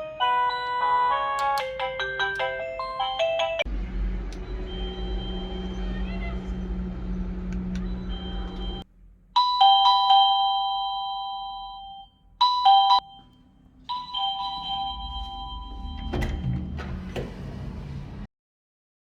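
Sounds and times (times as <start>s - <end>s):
doorbell chime melody: 0.0s - 3.7s, 9.4s - 16.6s.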